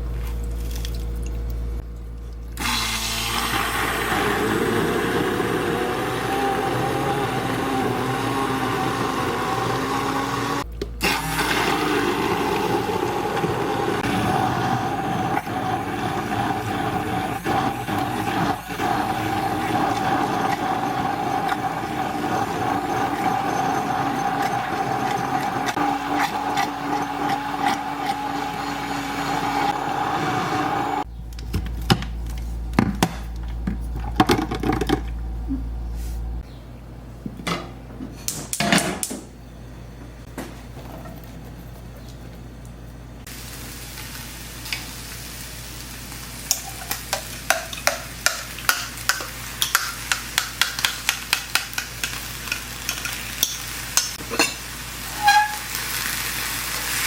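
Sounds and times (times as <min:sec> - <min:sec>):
kitchen appliance motor whining: 0:02.6 - 0:31.2, 0:47.8 - 0:57.0
dishes clattering: 0:52.9 - 0:54.6.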